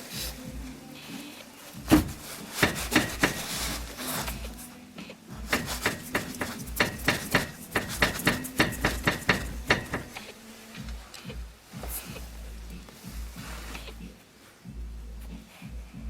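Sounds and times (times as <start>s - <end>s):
sharp hard knocks: 1.8s - 4.5s, 5.5s - 10.2s.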